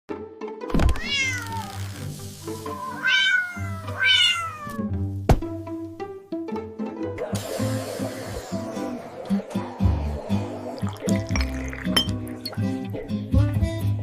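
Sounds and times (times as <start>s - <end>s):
light background music: 0.1s - 14.0s
cat meowing: 0.9s - 1.9s, 2.6s - 4.9s.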